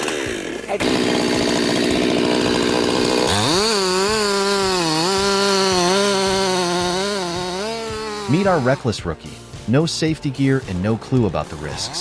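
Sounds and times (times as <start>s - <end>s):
chainsaw cutting at high revs: 0.0s - 9.0s, 11.5s - 12.0s.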